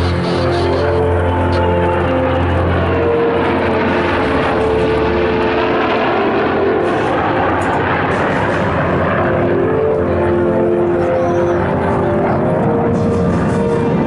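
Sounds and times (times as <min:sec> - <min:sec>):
aircraft flying past: 0:00.0 - 0:14.0.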